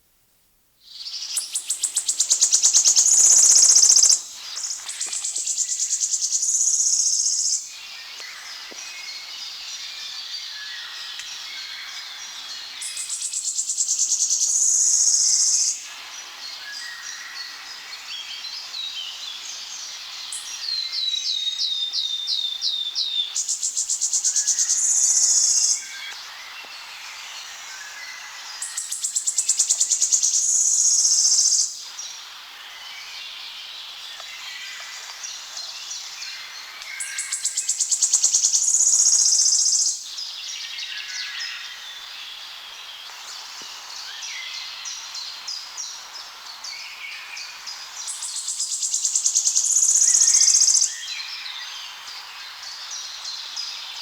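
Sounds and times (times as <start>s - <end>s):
bird song with trill: 0.9s - 15.8s.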